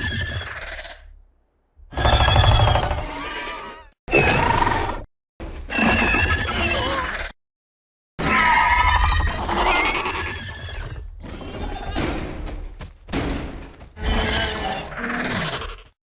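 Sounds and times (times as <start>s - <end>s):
dinosaur calls and screeches: 0.0s - 1.1s, 1.9s - 5.1s, 5.7s - 7.4s, 8.2s - 12.0s, 14.0s - 16.0s.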